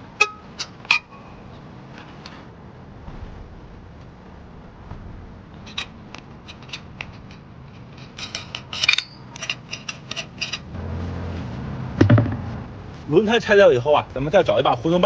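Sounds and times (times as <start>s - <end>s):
metal clinks and rattles: 5.7s - 10.7s.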